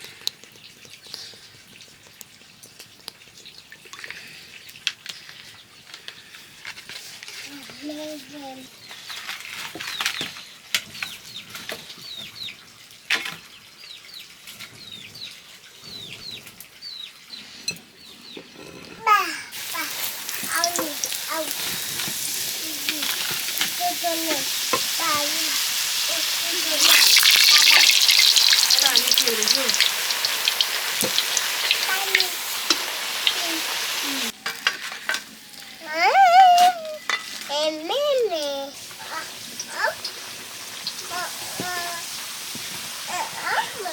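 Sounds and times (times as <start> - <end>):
dough sizzling in hot oil: 19.5 - 34.4, 38.5 - 43.9
cooking utensils clicking and knocking: 19.6 - 35.3.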